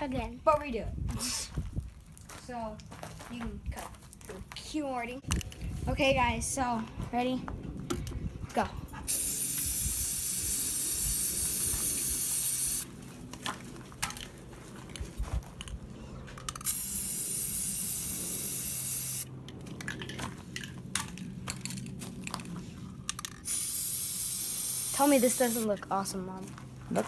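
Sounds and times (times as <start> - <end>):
spray paint can hissing: 9.1 - 12.9, 16.6 - 19.3, 23.4 - 25.8.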